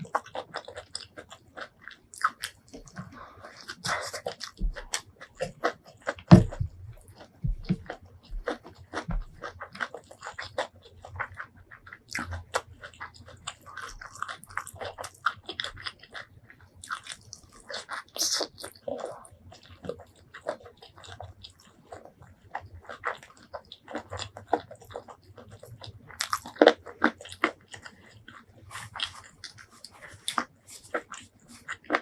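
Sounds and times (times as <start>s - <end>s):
chewing with wet mouth clicks: 0.0s - 32.0s
crunchy bites: 22.8s - 32.0s.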